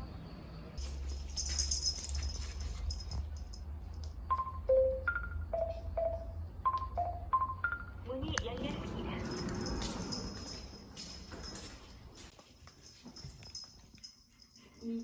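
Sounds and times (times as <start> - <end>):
rustling handling noise: 0.8 - 3.6
keypad beeps: 4.3 - 8.0.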